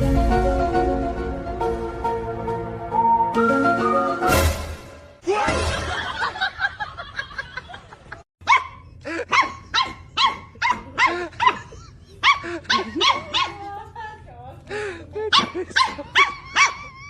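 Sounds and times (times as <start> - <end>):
dog barking: 8.4 - 13.7, 15.3 - 16.9.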